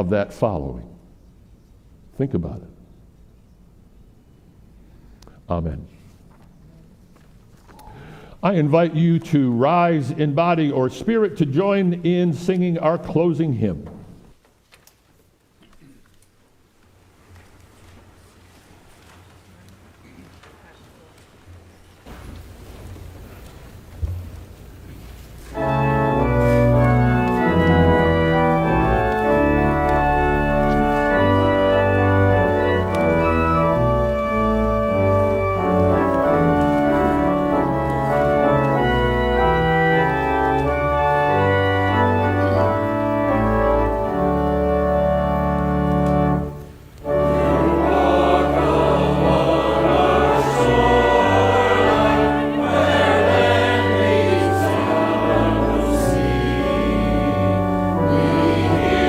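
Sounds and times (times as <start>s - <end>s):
church organ chords: 25.5s - 59.0s
congregation singing a hymn: 25.5s - 59.0s.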